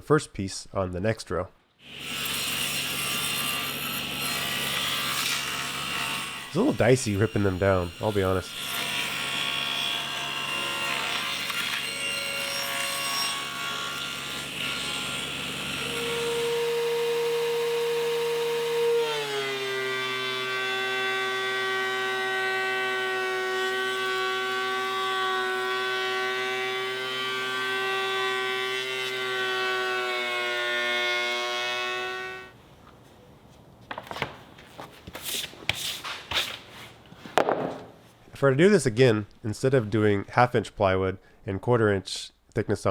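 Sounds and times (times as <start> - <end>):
power saw cutting wood: 1.8 - 32.6.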